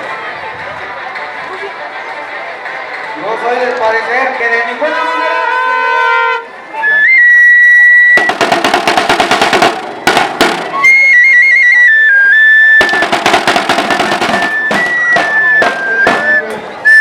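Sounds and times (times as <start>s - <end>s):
high flute: 6.1s - 8.3s, 10.7s - 13.3s, 13.9s - 17.0s
snare drum rolls: 8.1s - 11.2s, 12.8s - 17.0s.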